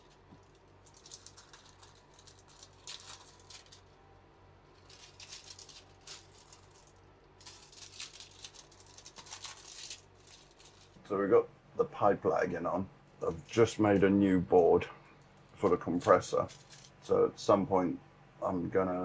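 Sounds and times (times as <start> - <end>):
sticky tape crackling: 0.0 - 11.0, 15.0 - 17.1
low steady hum: 0.0 - 19.0.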